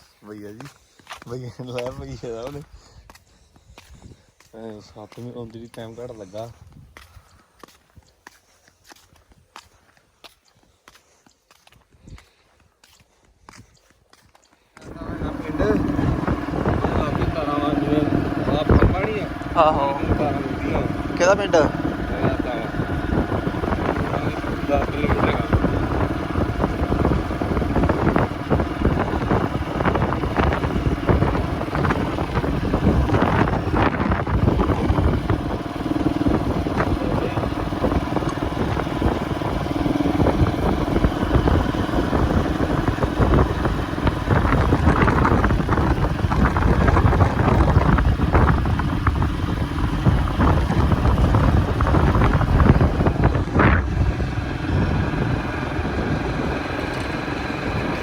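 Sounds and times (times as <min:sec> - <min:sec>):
low hum: 0:14.8 - 0:58.0
wind buffeting microphone: 0:14.8 - 0:58.0.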